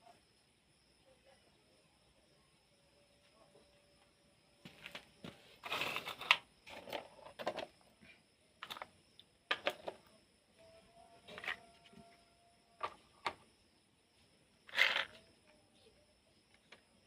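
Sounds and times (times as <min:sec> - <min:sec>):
plastic toy vehicles rattling: 0:05.6 - 0:07.8, 0:08.6 - 0:08.9, 0:14.7 - 0:15.2.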